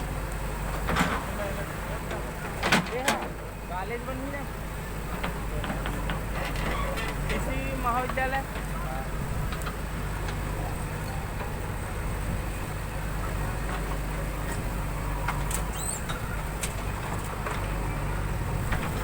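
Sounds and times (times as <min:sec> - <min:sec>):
diesel engine running: 0:00.0 - 0:19.0.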